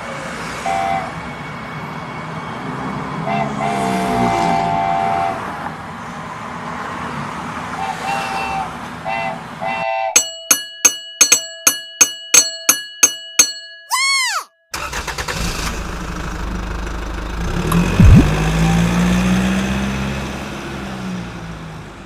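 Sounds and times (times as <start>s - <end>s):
vehicle engine running: 15.7s - 19.2s
rising and falling swoop: 17.8s - 19.1s
sharp thump: 18.0s - 18.4s.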